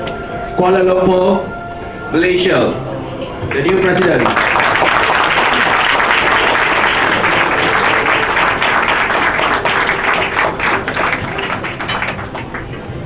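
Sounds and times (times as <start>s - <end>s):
audience applauding: 3.5s - 13.0s.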